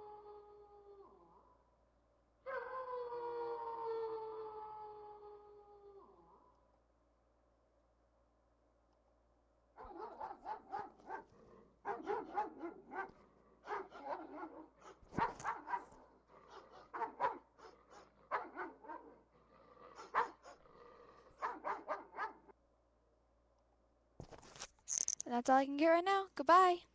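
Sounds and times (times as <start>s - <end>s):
dog barking: 9.8s - 19.2s, 20.0s - 20.7s, 21.4s - 22.5s.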